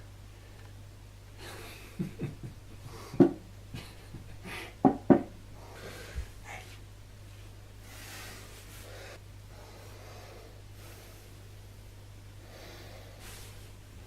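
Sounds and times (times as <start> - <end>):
steady low hum: 0.0 - 14.0
person breathing hard: 2.8 - 4.9, 5.5 - 6.8, 7.8 - 11.8, 12.4 - 13.7.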